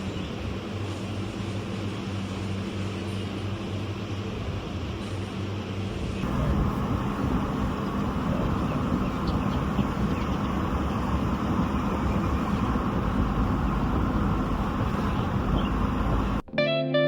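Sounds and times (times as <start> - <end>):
vehicle rumbling: 6.2 - 16.5.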